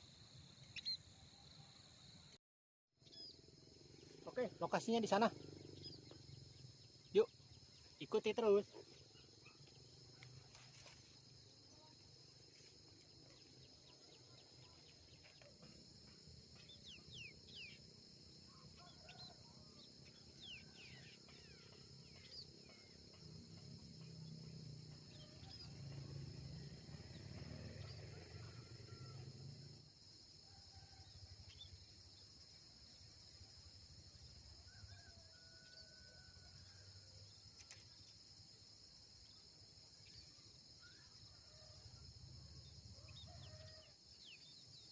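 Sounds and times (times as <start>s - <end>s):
bird chirps: 0.6s - 1.1s, 4.2s - 9.8s
cricket chorus drone: 3.0s - 44.9s.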